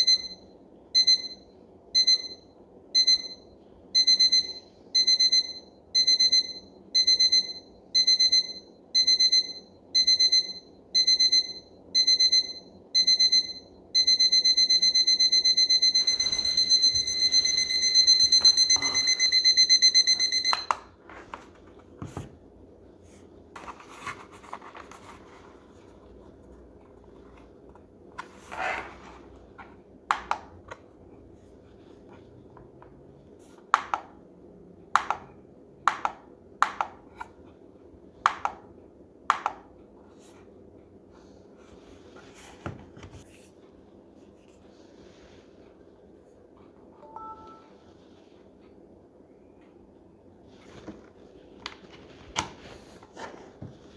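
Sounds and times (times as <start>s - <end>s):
alarm clock beeping: 0.0s - 20.8s, 47.0s - 47.7s.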